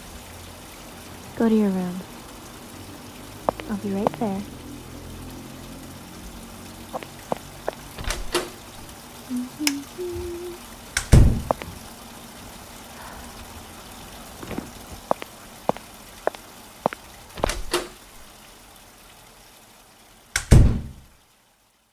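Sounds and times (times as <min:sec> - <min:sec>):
sharp taps: 0:03.5 - 0:04.3.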